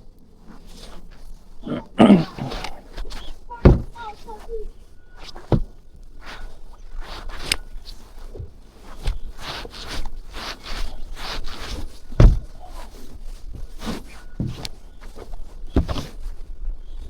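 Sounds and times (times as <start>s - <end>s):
footsteps crunching through snow: 0.0s - 17.0s
heavy thump: 2.4s - 4.5s, 12.2s - 12.6s.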